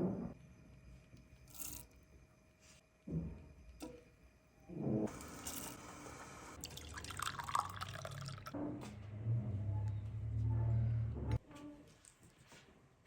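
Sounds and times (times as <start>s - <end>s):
liquid pouring into container: 6.6s - 8.6s.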